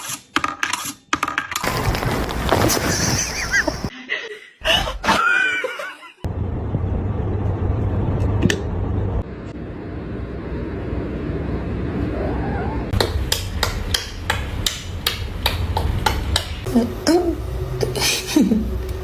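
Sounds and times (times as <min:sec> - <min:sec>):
rapid hammering: 0:13.0 - 0:16.7.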